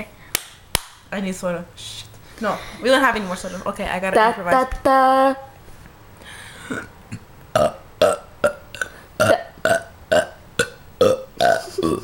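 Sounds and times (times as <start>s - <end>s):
person burping a tune: 6.6s - 12.0s.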